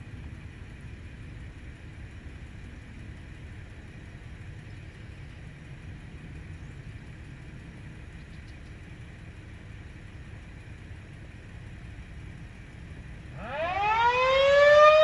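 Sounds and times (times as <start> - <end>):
low outdoor rumble: 0.0 - 15.0
faint high ticks: 8.2 - 8.9.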